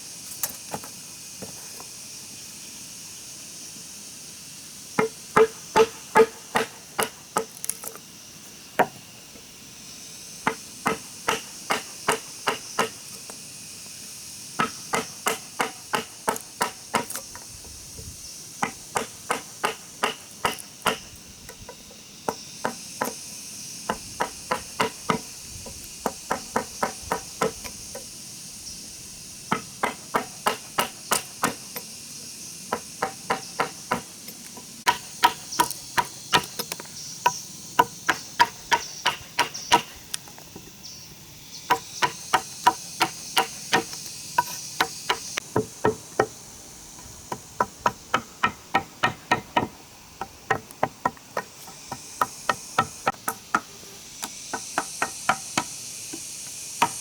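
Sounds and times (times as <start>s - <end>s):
insects buzzing faintly: 0.0s - 57.0s
hammer driving nails into wood: 5.0s - 8.0s, 10.5s - 13.1s, 14.6s - 17.4s, 18.6s - 21.2s, 23.9s - 25.3s, 26.0s - 27.7s, 29.5s - 31.8s, 32.8s - 34.1s, 34.9s - 36.9s, 41.7s - 45.7s.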